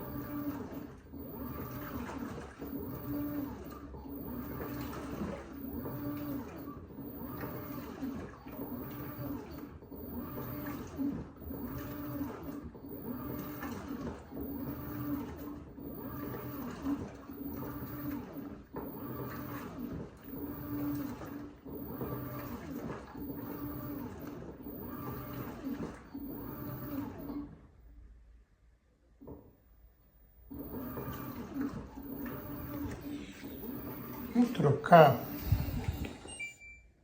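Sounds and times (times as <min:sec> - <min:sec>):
washing machine motor humming: 0:00.0 - 0:28.4, 0:29.1 - 0:37.0
water swishing: 0:30.9 - 0:36.4.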